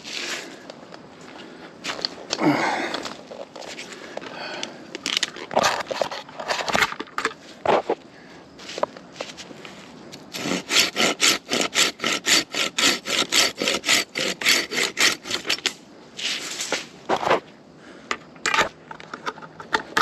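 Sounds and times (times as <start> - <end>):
hand saw cutting branch: 10.2 - 15.8.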